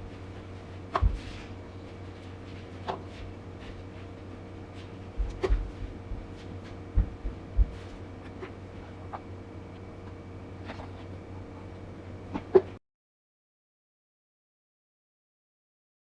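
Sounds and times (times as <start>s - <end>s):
steady electrical hum: 0.0s - 12.8s.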